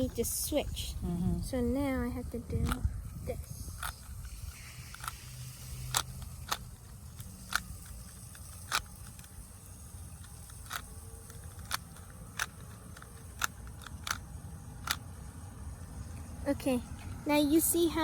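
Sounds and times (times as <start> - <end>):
puzzle cube plastic clicks: 2.6 - 16.3.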